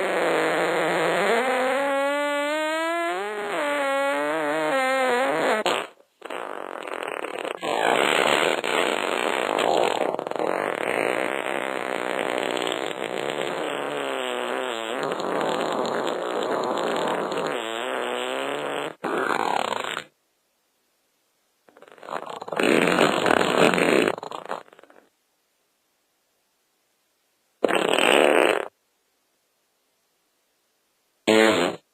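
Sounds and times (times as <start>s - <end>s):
farting: 0.0s - 20.1s, 21.7s - 25.1s, 27.6s - 28.8s, 31.2s - 31.9s.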